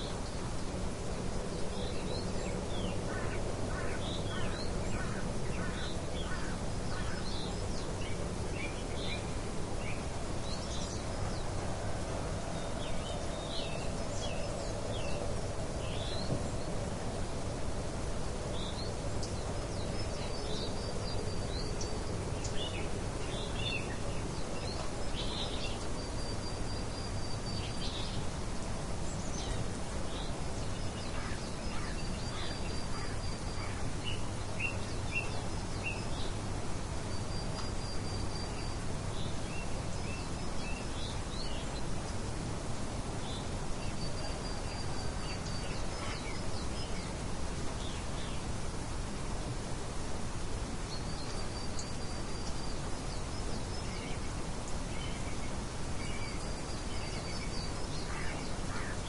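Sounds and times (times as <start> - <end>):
light wind hiss: 0.0 - 59.0
songbirds chirping: 0.0 - 59.0.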